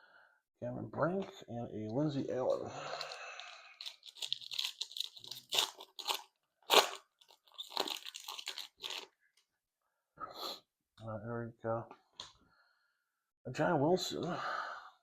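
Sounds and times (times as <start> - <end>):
foil wrapper tearing and crinkling: 3.8 - 9.1.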